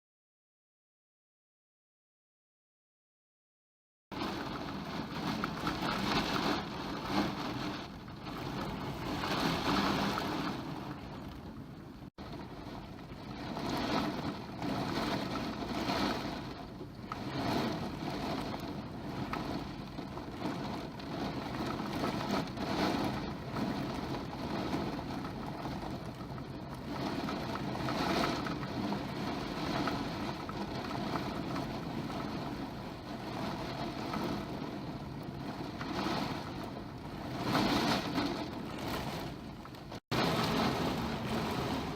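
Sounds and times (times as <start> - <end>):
torrential rain: 4.1 - 41.9
strong wind gusting: 33.0 - 41.9.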